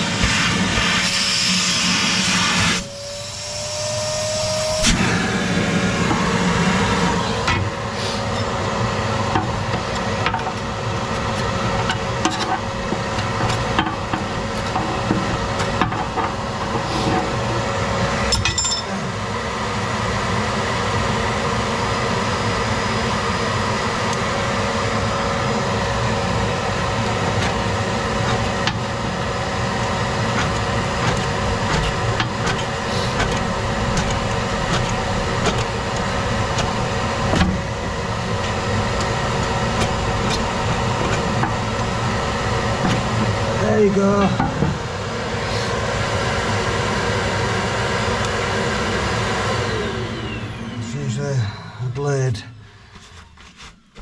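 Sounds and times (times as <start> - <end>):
small motor whining: 0.8 - 17.6, 24.1 - 43.6, 46.5 - 54.0
hand tools scraping and knocking: 9.3 - 17.4, 30.3 - 42.0, 42.6 - 43.4, 52.6 - 54.0.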